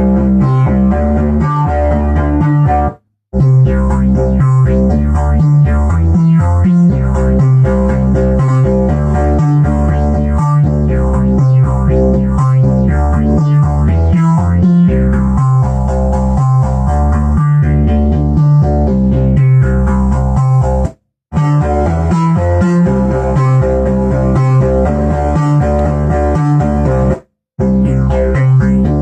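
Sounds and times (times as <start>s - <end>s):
repeating synth bass pattern: 0.0s - 29.0s
higher synth notes: 21.3s - 29.0s.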